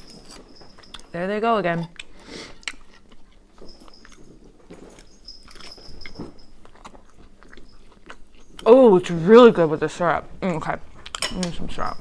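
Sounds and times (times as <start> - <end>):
dogs scuffling and clicking: 0.0 - 1.5, 2.8 - 12.0.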